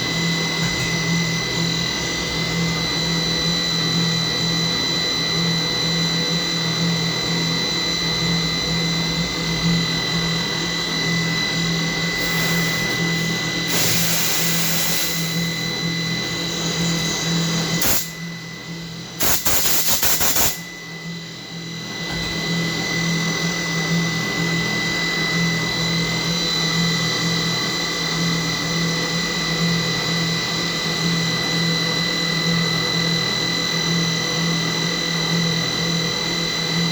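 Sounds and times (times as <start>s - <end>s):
milling machine whine: 0.0s - 36.9s
loud hiss: 13.7s - 15.4s, 19.2s - 20.6s.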